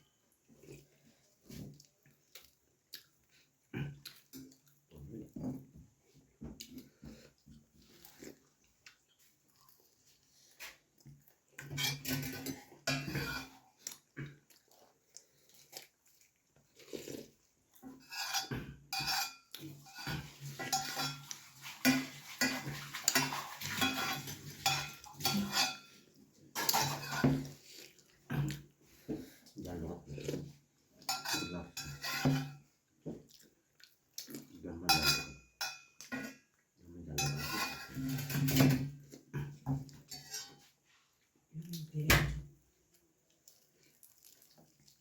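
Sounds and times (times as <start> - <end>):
chewing and smacking mouth sounds: 0.3 - 11.7, 13.5 - 17.9, 32.8 - 34.6, 42.8 - 45.0
dishes clinking: 11.7 - 13.5, 18.0 - 26.0, 26.6 - 27.6, 31.0 - 32.6, 34.9 - 36.5, 37.2 - 39.0.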